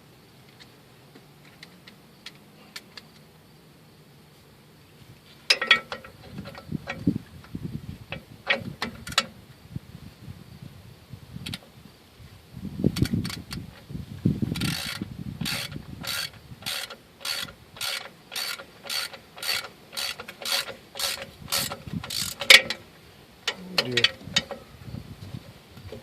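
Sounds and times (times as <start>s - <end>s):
ratchet wrench clicking: 13.0s - 13.6s, 14.5s - 22.8s.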